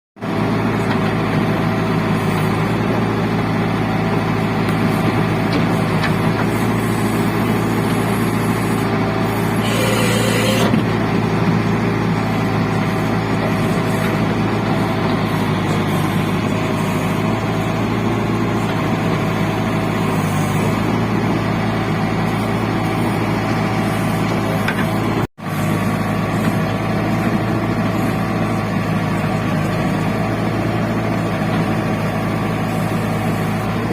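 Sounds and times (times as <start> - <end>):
diesel engine running: 0.2 - 33.9.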